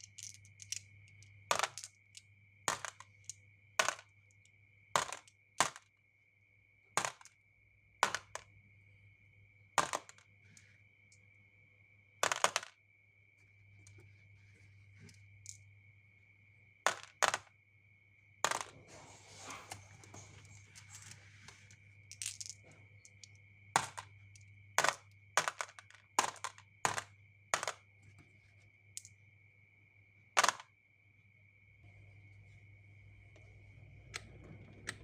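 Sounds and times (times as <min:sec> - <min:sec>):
marbles rolling on wooden track: 0:00.0 - 0:04.1, 0:05.0 - 0:05.8, 0:09.8 - 0:10.7, 0:12.2 - 0:12.8, 0:18.5 - 0:27.9.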